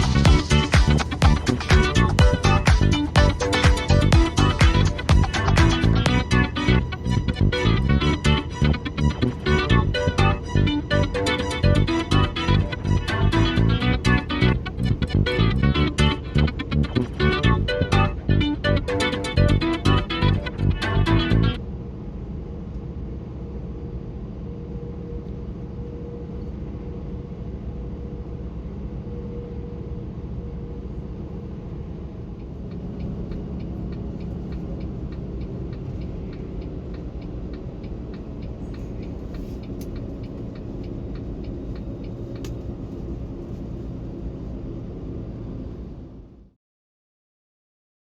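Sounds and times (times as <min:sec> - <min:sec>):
diesel engine and tyres rumbling: 0:00.0 - 0:46.6
fast regular ticking: 0:32.6 - 0:43.0.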